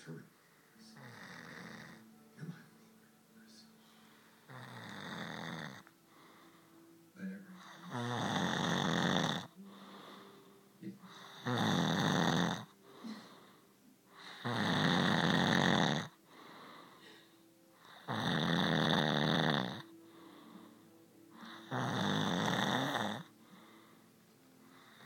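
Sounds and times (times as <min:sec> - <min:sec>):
man snoring loudly: 0:01.0 - 0:02.0, 0:04.5 - 0:05.8, 0:07.6 - 0:10.0, 0:11.1 - 0:12.7, 0:14.2 - 0:16.2, 0:17.9 - 0:20.4, 0:21.4 - 0:23.8.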